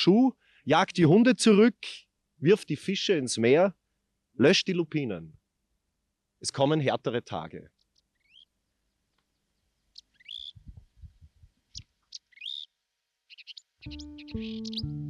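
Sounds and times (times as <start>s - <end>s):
short bird chirps: 8.2s - 8.5s, 10.0s - 10.6s, 11.7s - 14.9s
musical tune: 13.9s - 15.0s.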